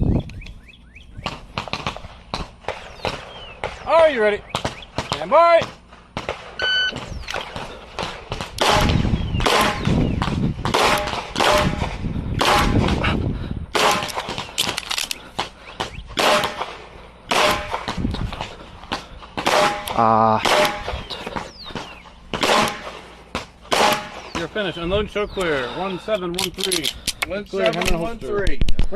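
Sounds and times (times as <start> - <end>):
shot timer beep: 6.6 - 7.4
pistol firing rapidly: 8.4 - 13.0, 13.7 - 14.8, 16.2 - 17.9, 19.4 - 21.0, 22.4 - 23.0, 23.7 - 24.4.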